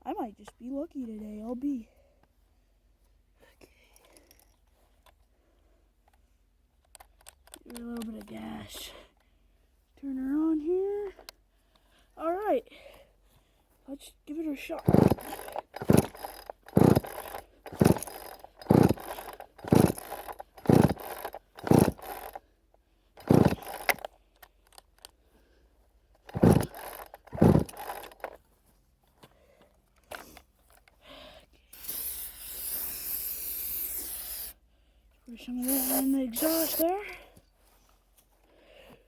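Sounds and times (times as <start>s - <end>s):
chainsaw recoil starter pulled: 14.6s - 22.5s, 23.2s - 25.1s, 26.1s - 28.4s, 31.8s - 34.5s, 35.6s - 36.9s
aerosol spray hiss: 31.8s - 34.6s, 35.6s - 36.8s.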